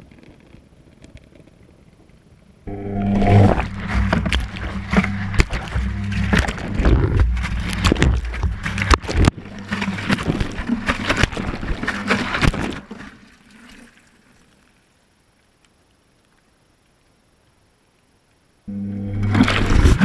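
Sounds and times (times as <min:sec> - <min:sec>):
low steady hum: 0:02.0 - 0:20.0
water sloshing in washing machine drum: 0:03.4 - 0:14.1.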